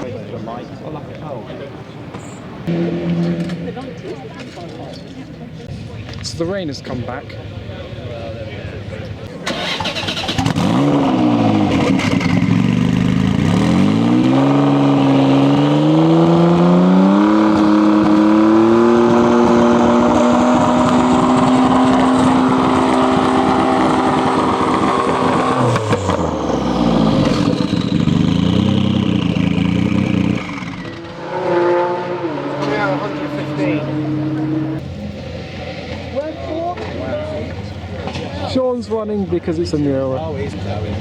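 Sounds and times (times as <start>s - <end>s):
car engine revving: 2.5s - 4.1s, 9.4s - 38.2s.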